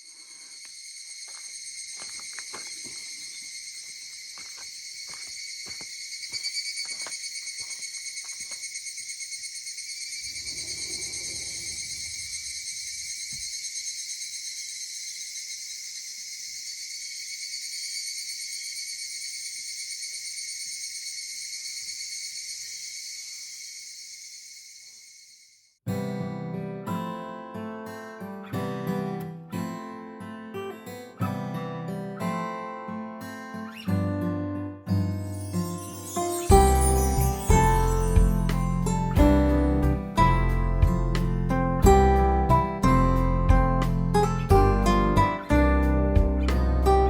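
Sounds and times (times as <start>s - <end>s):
cicadas chorus: 0.0s - 25.8s.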